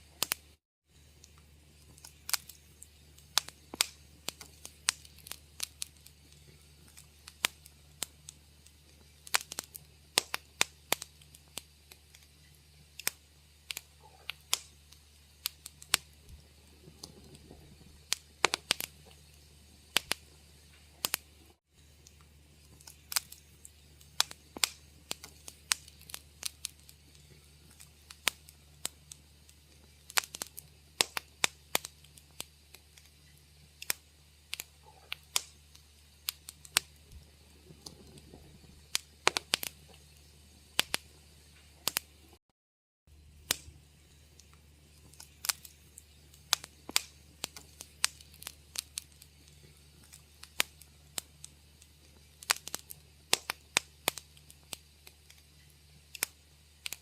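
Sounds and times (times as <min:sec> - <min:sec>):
faint low hum: 0:00.0 - 0:42.4, 0:43.1 - 0:57.0
wood fire crackling: 0:00.0 - 0:42.4, 0:43.1 - 0:57.0.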